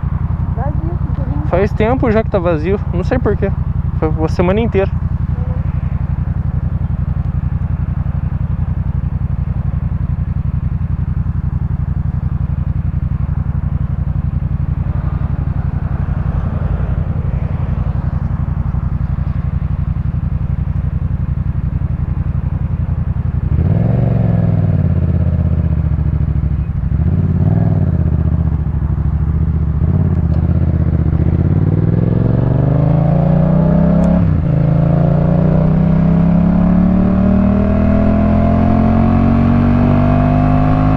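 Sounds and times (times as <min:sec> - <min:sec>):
motorcycle engine idling and revving: 0:00.0 - 0:40.9.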